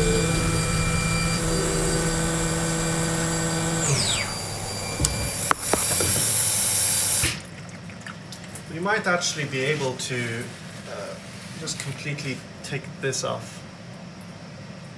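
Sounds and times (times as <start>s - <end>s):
loud steady hiss: 0.0s - 7.4s
milling machine spindle running: 0.0s - 7.4s.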